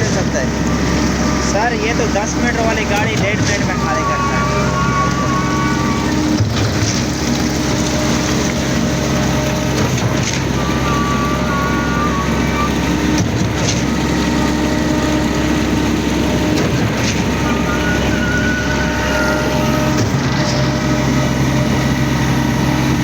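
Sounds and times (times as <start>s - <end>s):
concrete pump knocking: 0.0s - 23.0s
concrete pump running: 0.0s - 23.0s.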